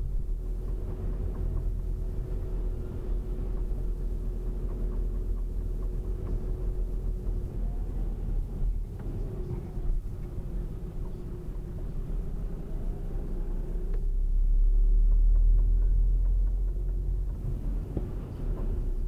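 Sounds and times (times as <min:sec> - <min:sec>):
car engine rumble: 0:00.0 - 0:19.0.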